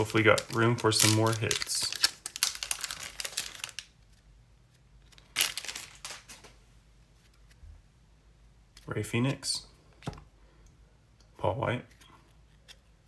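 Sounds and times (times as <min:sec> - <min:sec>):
foil wrapper tearing and crinkling: 0:00.0 - 0:03.9, 0:05.2 - 0:06.5.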